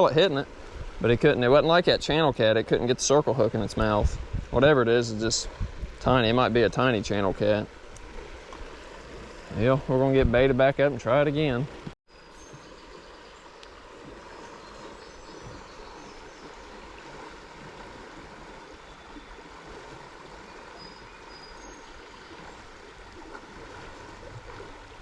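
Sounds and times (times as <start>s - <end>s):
river water rushing: 7.0s - 10.0s, 11.7s - 25.0s.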